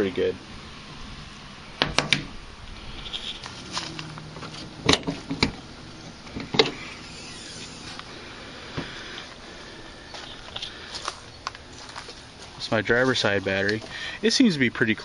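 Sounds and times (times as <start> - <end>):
sharp clicks and knocks: 1.8 - 2.3, 3.0 - 5.6, 6.2 - 6.8.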